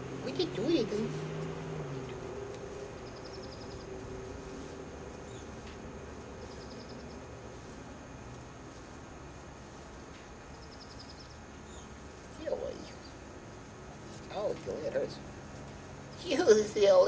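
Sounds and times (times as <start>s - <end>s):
rapid high chirping ticks: 2.0s - 14.4s.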